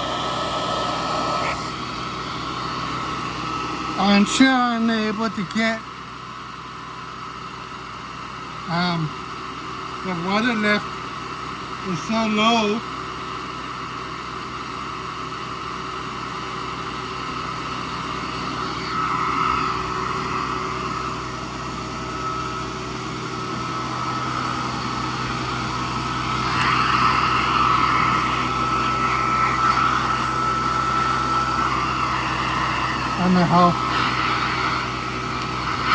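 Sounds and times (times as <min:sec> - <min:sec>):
vacuum cleaner running: 0:00.0 - 0:04.9, 0:15.9 - 0:35.9.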